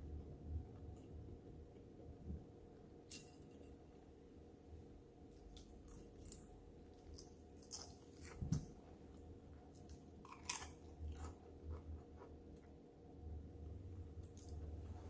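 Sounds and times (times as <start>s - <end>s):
person chewing crunchy food: 5.3s - 12.7s.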